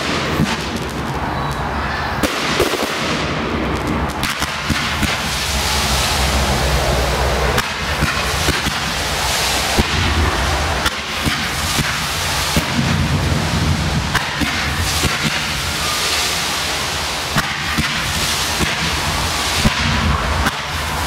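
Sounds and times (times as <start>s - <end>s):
fireworks bangs: 0.0s - 21.0s
fireworks crackling: 0.0s - 21.0s
low rumble: 5.3s - 11.3s.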